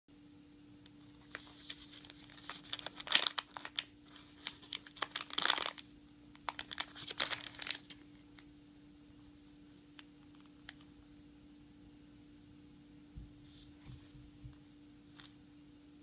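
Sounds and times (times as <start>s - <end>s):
faint steady hum: 0.1s - 16.0s
crinkling and clicking handling: 0.8s - 8.5s, 9.8s - 10.9s.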